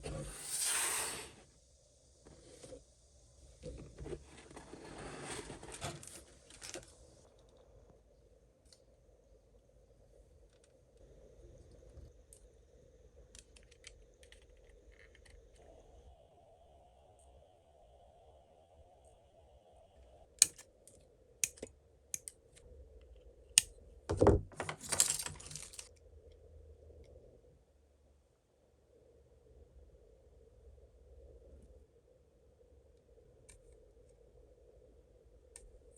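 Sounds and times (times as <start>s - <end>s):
rustling and scraping: 3.6s - 7.2s, 24.5s - 25.9s
plastic model kit being handled: 3.7s - 7.0s, 24.1s - 25.9s
sharp plastic clicks: 20.4s - 20.6s, 21.4s - 22.4s.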